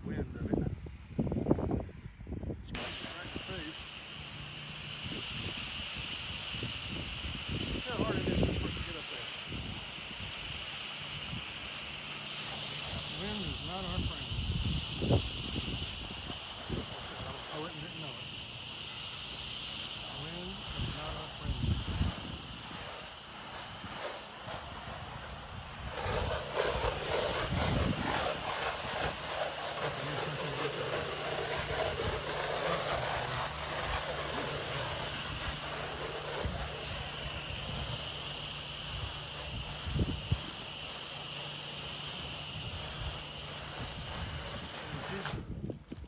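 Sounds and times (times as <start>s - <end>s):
spray nozzle hissing: 2.8s - 45.5s
steady low hum: 18.1s - 40.4s.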